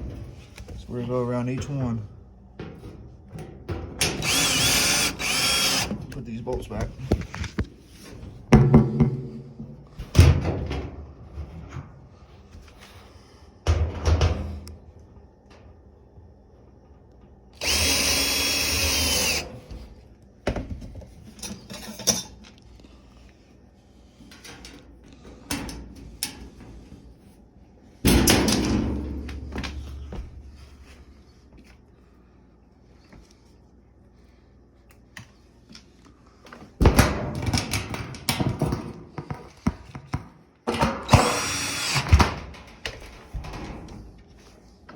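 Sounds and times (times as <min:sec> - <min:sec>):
power drill driving bolts: 0:04.0 - 0:06.0, 0:17.6 - 0:19.6, 0:41.0 - 0:42.4.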